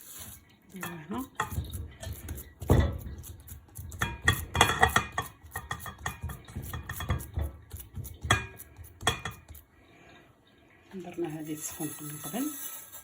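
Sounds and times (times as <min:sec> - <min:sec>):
pans and utensils clattering: 0:00.2 - 0:09.7.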